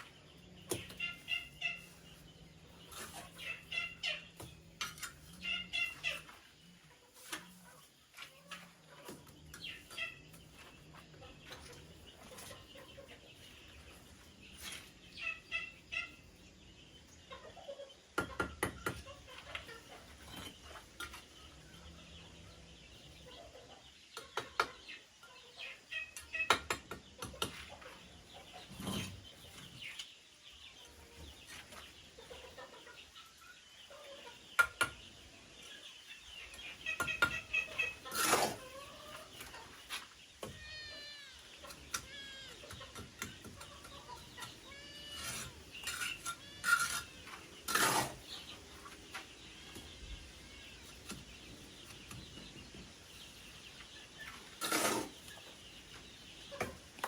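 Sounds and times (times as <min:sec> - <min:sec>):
chickens clucking: 0:00.0 - 0:57.0
sharp knocks and clatters: 0:18.1 - 0:19.6.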